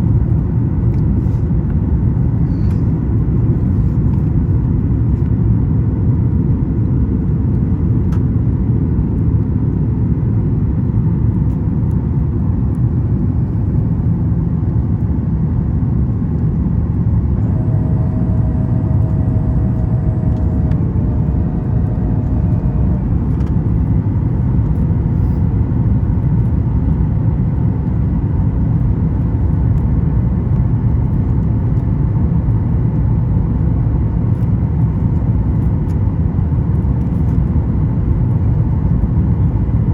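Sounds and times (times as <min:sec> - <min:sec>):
airplane cabin roar: 0:00.0 - 0:39.9
faint two-note hum: 0:17.3 - 0:24.0.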